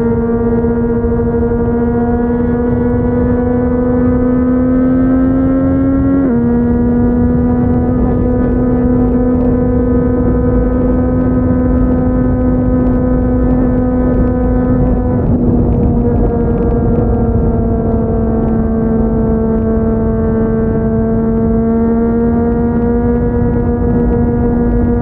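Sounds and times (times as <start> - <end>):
wind and road noise: 0.0 - 25.0.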